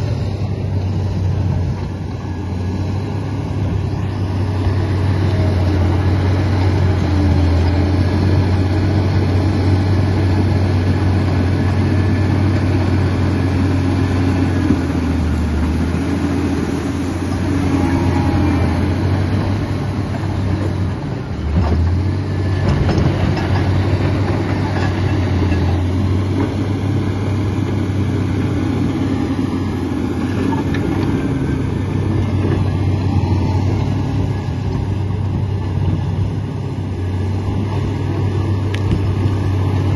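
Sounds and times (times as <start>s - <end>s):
bulldozer diesel engine running: 0.0s - 39.9s.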